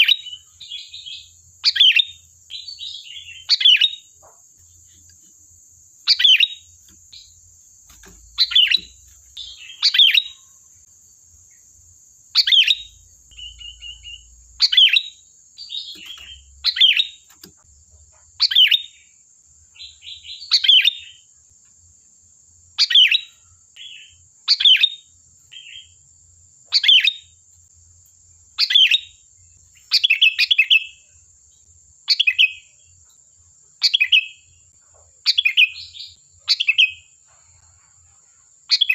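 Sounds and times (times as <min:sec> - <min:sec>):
bulbul singing downward phrases: 0:00.0 - 0:04.1, 0:05.9 - 0:10.6, 0:11.5 - 0:17.4
soft bird chattering: 0:00.0 - 0:05.3, 0:06.0 - 0:10.7, 0:12.3 - 0:19.1, 0:22.8 - 0:25.9, 0:26.7 - 0:27.3, 0:28.6 - 0:29.2, 0:29.8 - 0:31.1, 0:33.8 - 0:38.0, 0:38.7 - 0:38.9.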